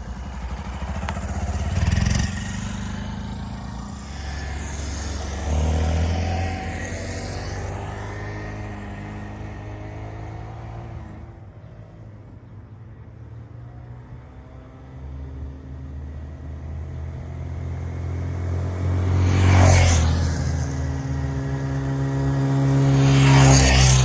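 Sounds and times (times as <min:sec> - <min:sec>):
motorcycle engine running: 0:00.0 - 0:11.3, 0:16.9 - 0:24.0.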